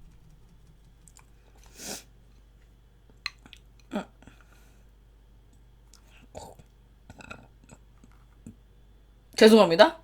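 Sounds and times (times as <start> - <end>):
mouth eating sounds: 5.9 - 8.6.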